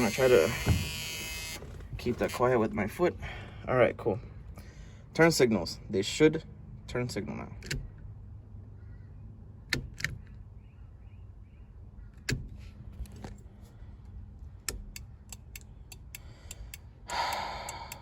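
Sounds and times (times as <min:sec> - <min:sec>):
turn signal flasher clicking: 0:09.7 - 0:10.4, 0:14.6 - 0:18.0.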